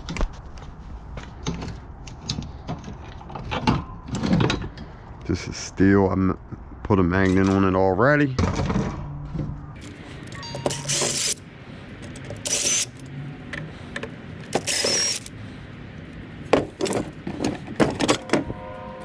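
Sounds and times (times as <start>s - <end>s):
metal parts clicking and clattering: 16.6s - 18.4s.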